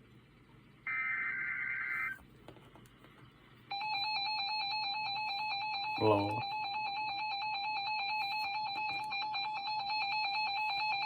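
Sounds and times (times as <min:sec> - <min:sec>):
warbling data tones: 0:00.8 - 0:02.2.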